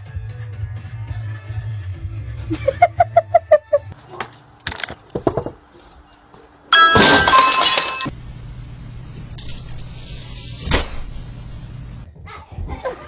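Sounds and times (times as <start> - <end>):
crash with clinking and ringing: 6.7 - 8.1.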